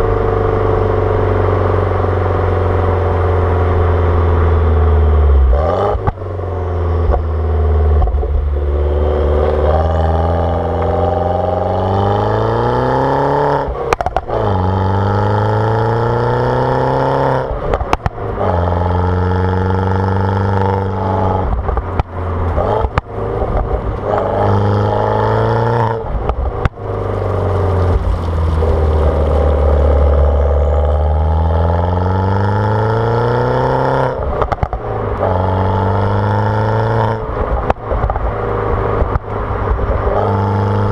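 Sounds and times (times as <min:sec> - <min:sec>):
turbocharged engine revving: 0:00.0 - 0:40.9
exhaust crackles and pops: 0:07.9 - 0:08.8, 0:13.8 - 0:14.6, 0:17.6 - 0:18.8, 0:20.6 - 0:24.6, 0:25.7 - 0:31.2, 0:34.2 - 0:35.8, 0:37.2 - 0:40.9.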